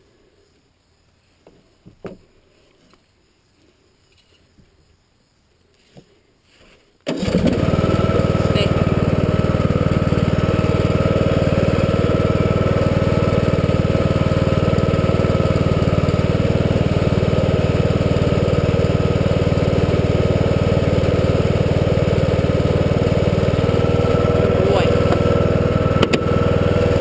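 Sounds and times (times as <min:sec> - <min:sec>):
engine idling: 0:07.1 - 0:27.0.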